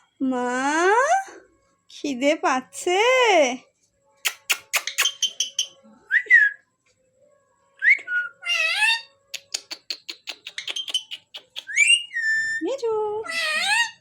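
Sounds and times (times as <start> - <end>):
parrot whistled chirps: 4.2 - 6.6, 7.8 - 12.7
sharp clicks: 4.3 - 5.5.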